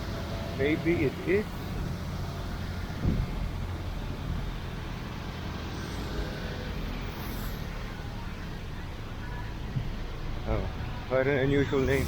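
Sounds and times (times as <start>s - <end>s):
street traffic: 0.0s - 12.0s
low thump: 3.0s - 3.5s.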